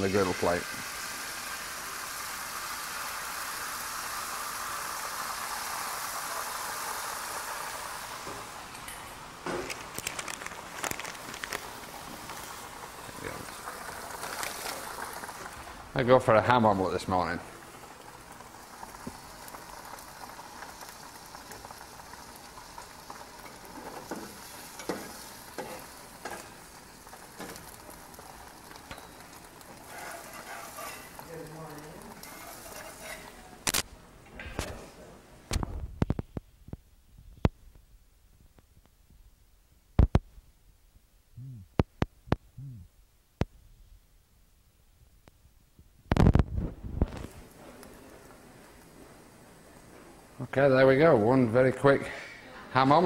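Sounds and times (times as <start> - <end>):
egg mixture sizzling on griddle: 0.0 - 33.9, 46.1 - 53.0.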